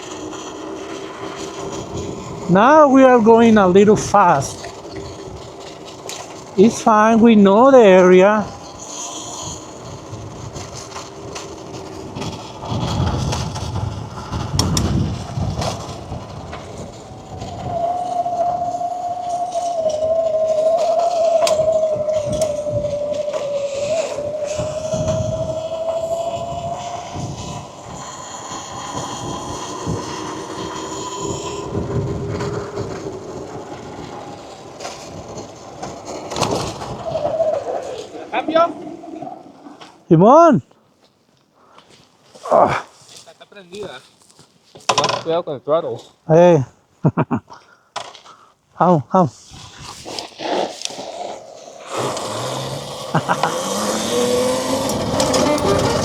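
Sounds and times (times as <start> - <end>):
small bike engine rumbling: 0.0 - 40.1, 49.3 - 56.0.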